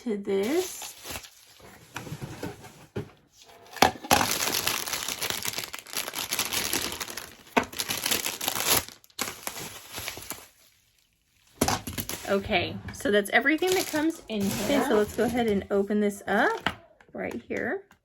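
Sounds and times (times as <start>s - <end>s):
plastic packaging crinkling: 4.0s - 12.4s, 13.6s - 15.6s.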